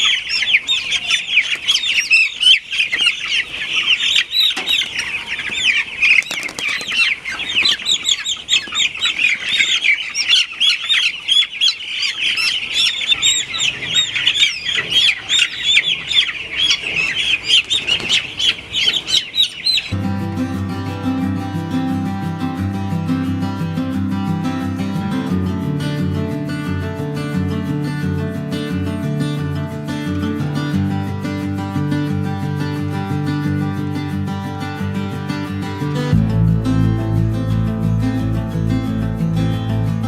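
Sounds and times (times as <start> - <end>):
chickens peeping: 0.0 - 20.4.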